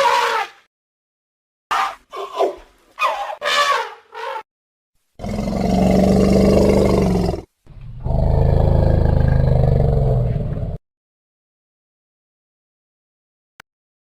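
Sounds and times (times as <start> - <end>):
elephant roaring calls: 5.2 - 10.8.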